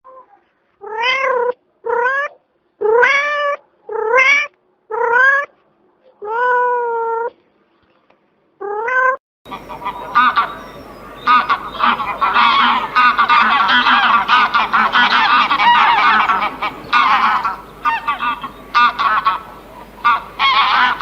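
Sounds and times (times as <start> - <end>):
cat meowing: 0.8 - 2.2, 2.8 - 5.5.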